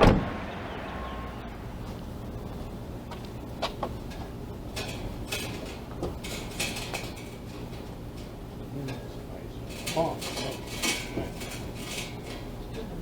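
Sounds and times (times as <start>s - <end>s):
steady low hum: 0.0s - 13.0s
metallic clanks and rattles: 3.7s - 9.0s, 9.6s - 13.0s.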